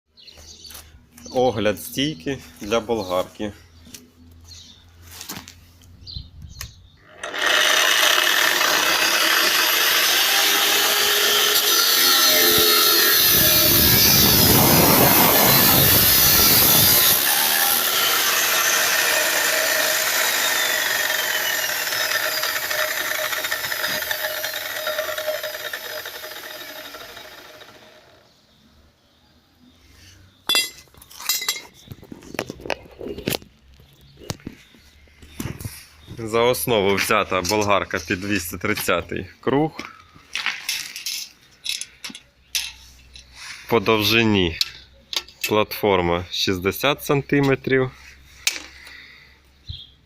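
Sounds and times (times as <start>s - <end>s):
angle grinder running: 7.0s - 28.2s
grinder disc coasting down: 7.0s - 28.2s.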